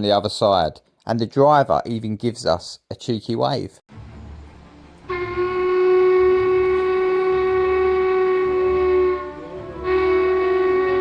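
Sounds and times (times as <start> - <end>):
low rumble of train running: 3.9 - 11.0
steam whistle blast: 5.0 - 11.0.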